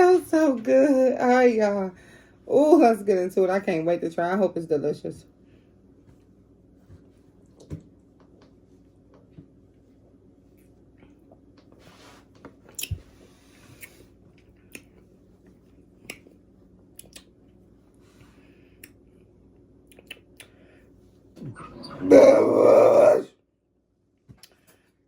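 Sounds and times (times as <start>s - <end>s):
mouth and throat clicks: 17.0s - 17.3s, 19.9s - 20.6s.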